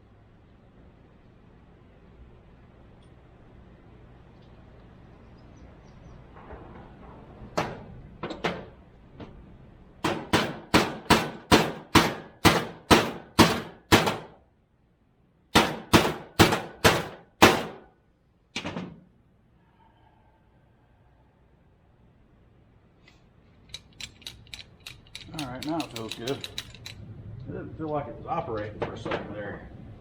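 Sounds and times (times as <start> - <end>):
hammer striking metal: 10.0 - 14.3, 15.6 - 17.9.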